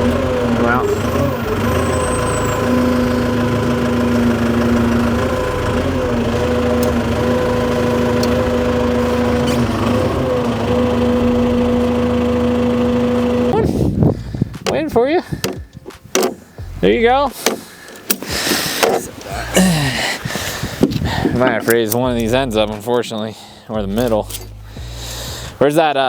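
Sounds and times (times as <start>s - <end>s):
engine idling: 0.0s - 14.6s, 16.4s - 25.6s.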